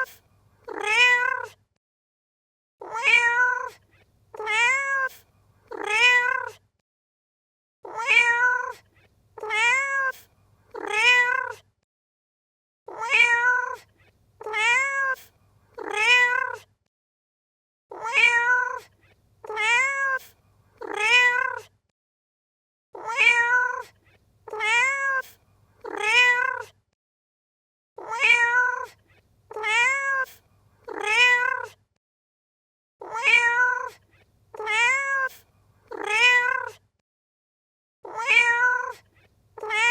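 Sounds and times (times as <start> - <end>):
cat meowing: 0.0 - 1.6, 2.8 - 6.6, 7.8 - 8.8, 9.4 - 11.6, 12.9 - 16.7, 17.9 - 21.7, 23.0 - 26.8, 28.0 - 31.8, 33.0 - 36.8, 38.1 - 39.9.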